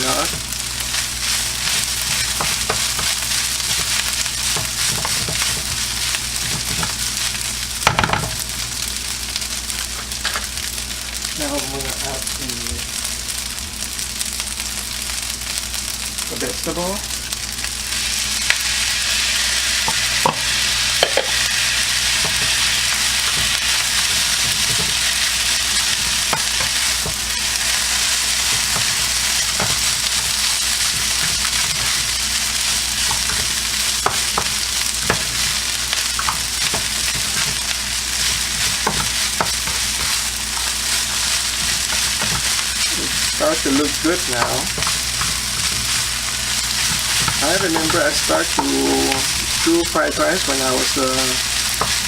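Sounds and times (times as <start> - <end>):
rice sizzling in a pan: 0.0 - 52.0
spatula scraping a pan: 19.9 - 49.4.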